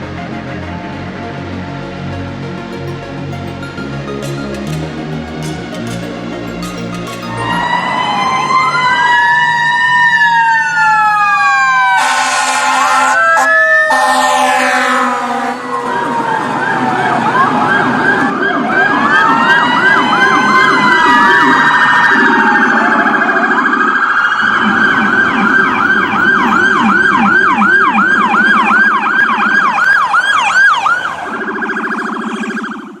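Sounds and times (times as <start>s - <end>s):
electronic siren wailing and yelping: 7.6s - 33.0s.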